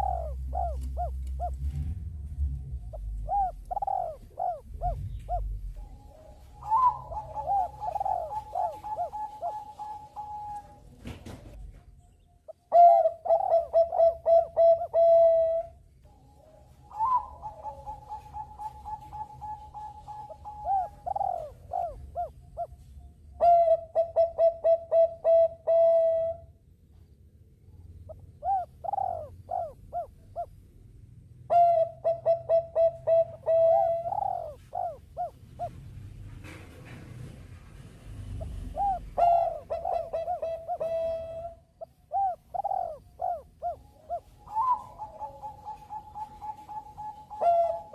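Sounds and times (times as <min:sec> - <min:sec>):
doves cooing: 0:00.0 - 0:11.8, 0:12.5 - 0:26.5, 0:27.9 - 0:47.9.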